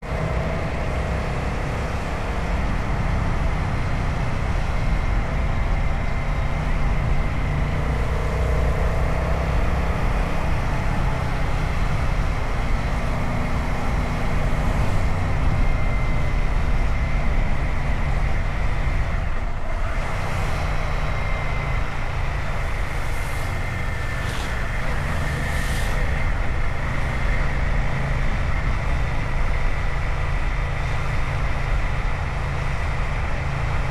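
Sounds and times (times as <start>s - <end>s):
road noise: 0.0s - 33.9s
wind noise: 0.0s - 33.9s.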